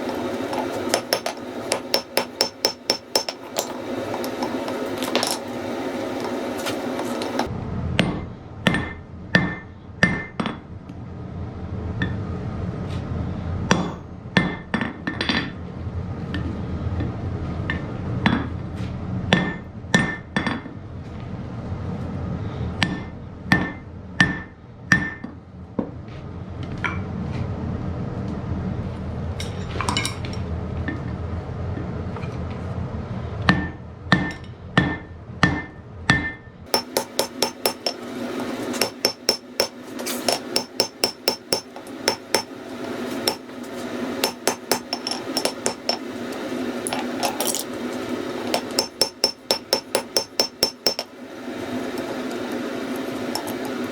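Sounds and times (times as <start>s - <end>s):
hammer striking iron on anvil: 0.5s - 5.5s, 7.0s - 10.7s, 13.7s - 15.6s, 19.3s - 20.7s, 22.8s - 25.4s, 33.5s - 38.1s, 38.7s - 42.6s, 43.2s - 43.5s, 44.2s - 46.1s, 48.5s - 51.1s.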